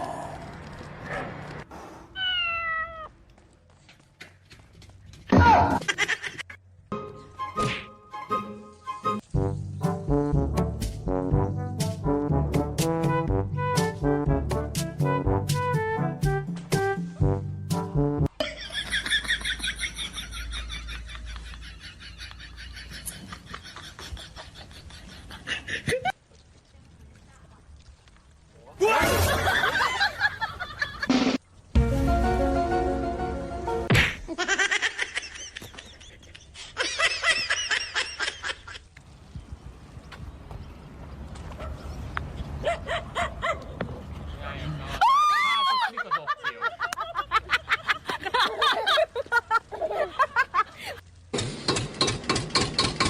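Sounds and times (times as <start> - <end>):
music: 6.9 - 18.3, 31.1 - 33.9.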